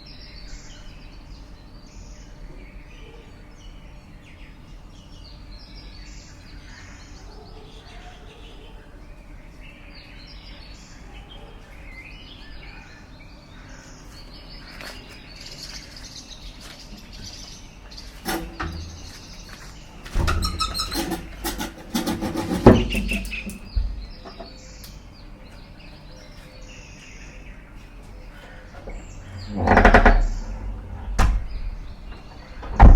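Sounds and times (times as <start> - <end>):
small birds chirping: 0.0 - 32.9
loud irregular knocks: 18.2 - 24.6, 28.8 - 32.9.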